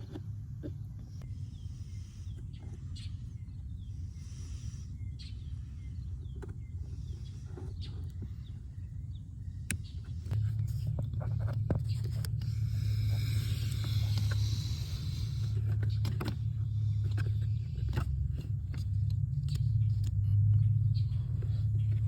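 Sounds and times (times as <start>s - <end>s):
faint bird chirps: 0.0s - 22.0s
steady low rumble: 0.0s - 22.0s
sharp clicks and knocks of parts: 15.5s - 20.7s.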